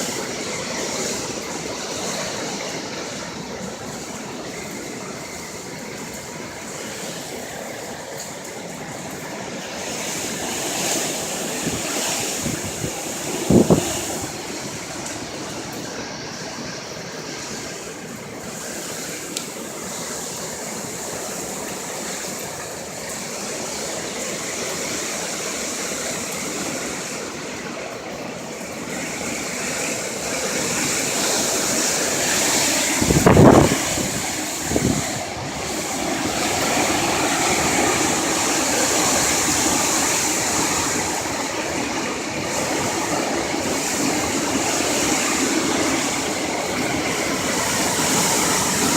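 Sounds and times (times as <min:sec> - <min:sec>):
strong wind rushing: 0:10.8 - 0:15.0, 0:30.7 - 0:48.9.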